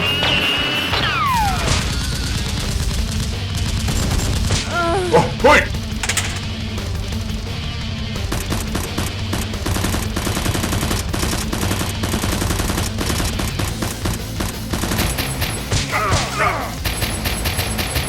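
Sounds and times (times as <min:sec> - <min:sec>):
background music: 0:00.0 - 0:18.0.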